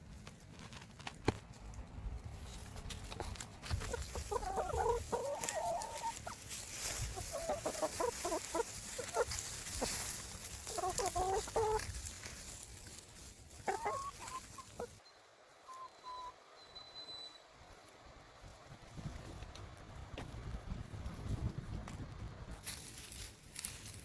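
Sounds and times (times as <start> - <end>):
chickens clucking: 3.1 - 15.0.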